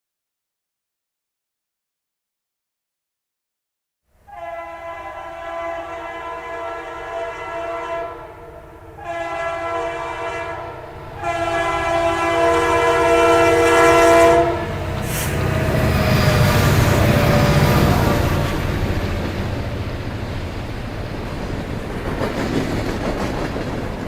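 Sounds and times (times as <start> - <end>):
train air horn blasts: 4.2 - 18.7
train passing rumble: 4.2 - 24.0.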